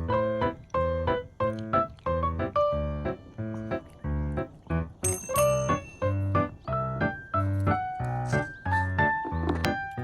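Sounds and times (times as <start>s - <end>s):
light keyboard tune with bouncy beat: 0.0s - 10.0s.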